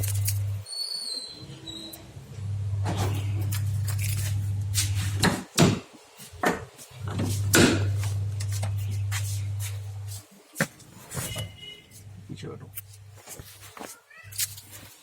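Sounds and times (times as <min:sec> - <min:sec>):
steady low hum: 0:02.0 - 0:05.5.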